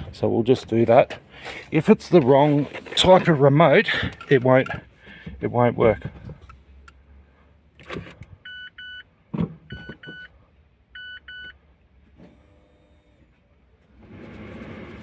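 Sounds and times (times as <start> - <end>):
sharp clicks from controls: 7.8 - 10.3.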